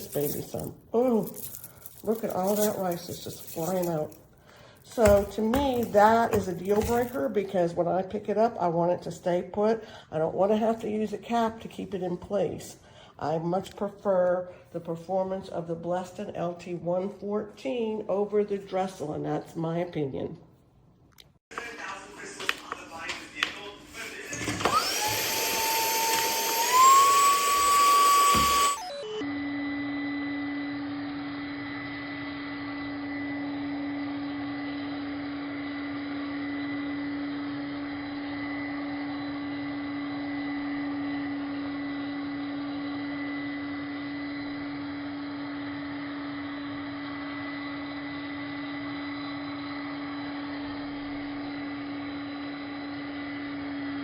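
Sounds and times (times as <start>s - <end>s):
handheld vacuum motor whining: 0.0s - 4.2s, 4.8s - 7.5s, 24.3s - 54.0s.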